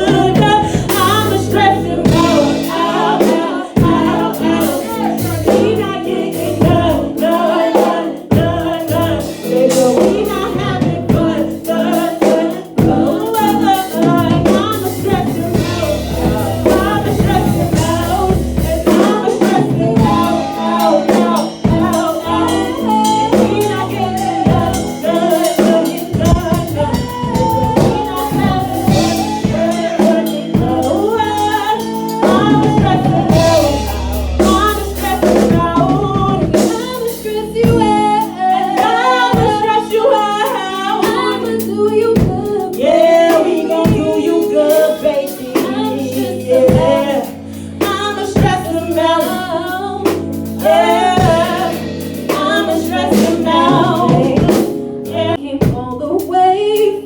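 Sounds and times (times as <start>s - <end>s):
drum kit beat: 0.0s - 57.0s
woman singing: 0.0s - 57.0s
low bass: 3.8s - 5.8s, 32.4s - 36.6s.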